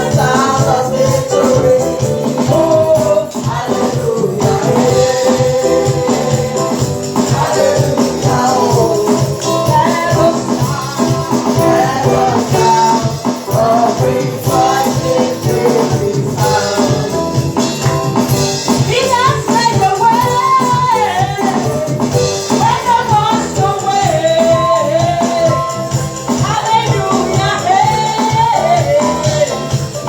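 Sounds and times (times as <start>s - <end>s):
person singing: 0.0s - 17.3s
instrumental accompaniment with beat: 0.0s - 30.0s.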